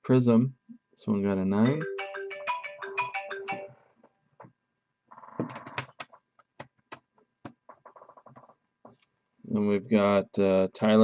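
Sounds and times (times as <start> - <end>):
phone ringtone melody: 1.6 - 4.0.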